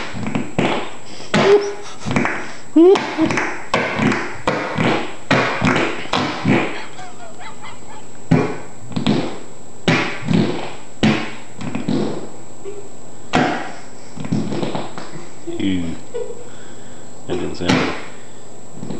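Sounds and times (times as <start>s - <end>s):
fart-like noises from back on floor: 0.0s - 6.8s, 8.3s - 12.3s, 13.6s - 15.2s.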